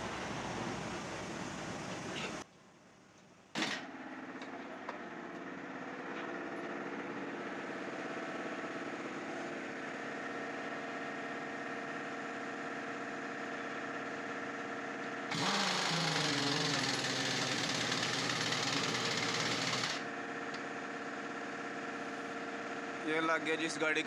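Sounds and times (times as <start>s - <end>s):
harsh machine noise: 3.6s - 9.8s, 15.3s - 24.0s
engine idling: 15.3s - 23.8s.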